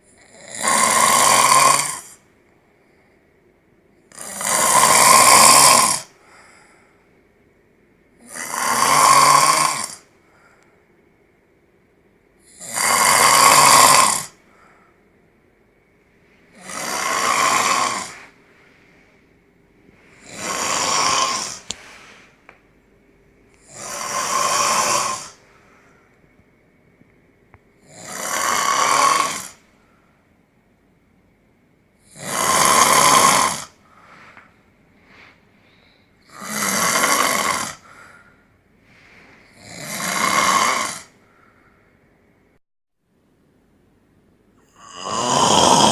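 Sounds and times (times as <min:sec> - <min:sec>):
man snoring loudly: 0:00.0 - 0:02.2, 0:04.1 - 0:06.2, 0:08.2 - 0:10.1, 0:12.4 - 0:14.4, 0:16.5 - 0:18.4, 0:20.2 - 0:21.8, 0:23.6 - 0:25.4, 0:27.8 - 0:29.6, 0:32.0 - 0:33.8, 0:36.2 - 0:38.0, 0:39.5 - 0:41.2, 0:44.7 - 0:45.9.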